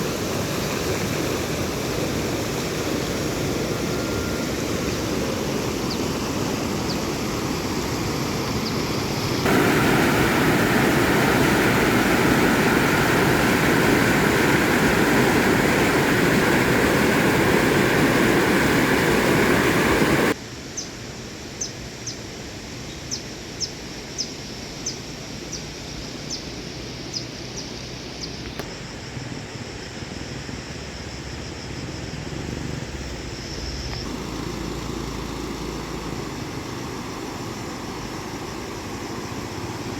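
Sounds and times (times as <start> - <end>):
stream water rushing: 0.0 - 20.4, 33.9 - 39.9.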